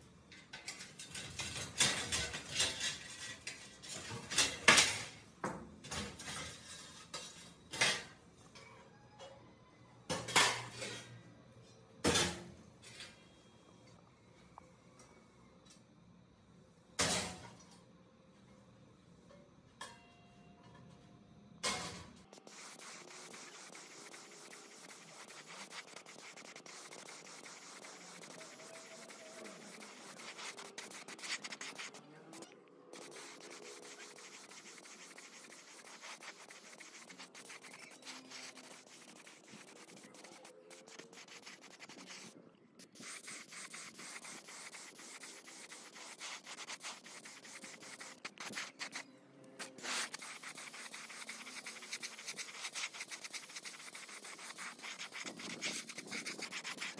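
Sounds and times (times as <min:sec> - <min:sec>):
sandpaper rubbing: 0:22.4 - 0:32.0, 0:32.9 - 0:49.0, 0:49.6 - 0:56.9.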